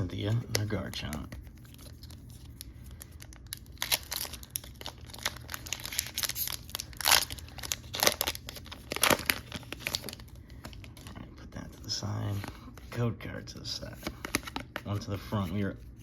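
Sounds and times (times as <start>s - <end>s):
foil wrapper crinkling and tearing: 0.1s - 11.1s.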